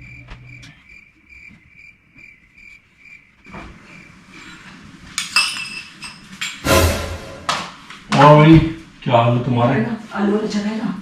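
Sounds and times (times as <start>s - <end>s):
cricket chirping: 0.0s - 4.6s.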